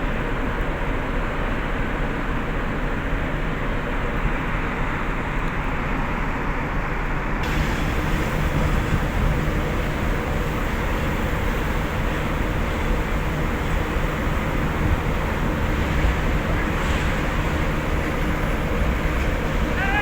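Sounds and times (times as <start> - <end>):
ship machinery rumble: 7.4 - 20.0.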